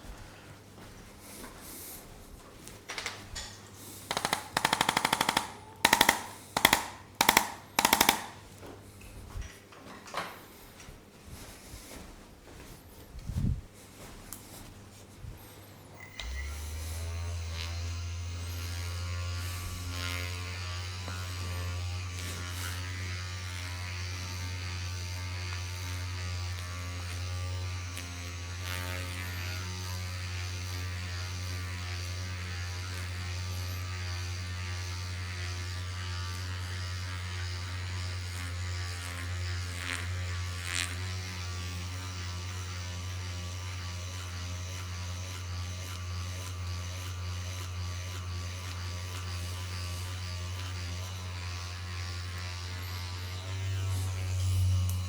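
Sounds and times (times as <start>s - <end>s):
small electric motor buzzing: 2.9s - 9.0s, 15.4s - 55.0s.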